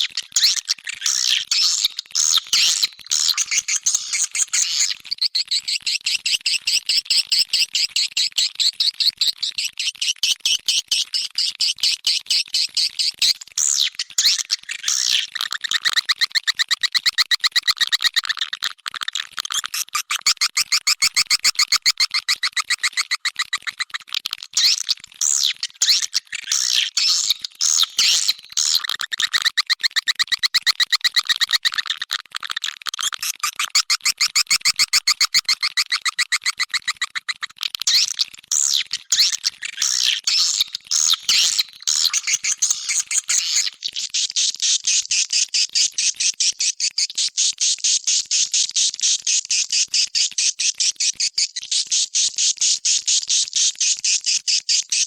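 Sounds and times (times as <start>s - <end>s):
swiftlets twittering chirps: 13.6s - 18.5s, 24.6s - 31.9s, 33.1s - 44.2s.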